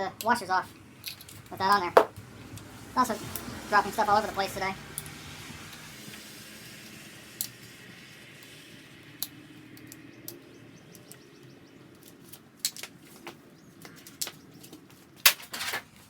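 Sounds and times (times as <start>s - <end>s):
light clicks of metal parts: 9.2s - 16.0s.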